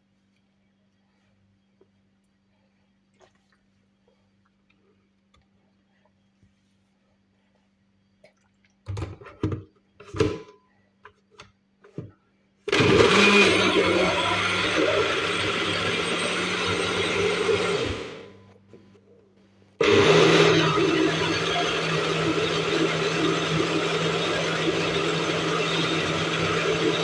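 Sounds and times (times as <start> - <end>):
electric blender motor: 12.7 - 18.4, 19.8 - 27.0.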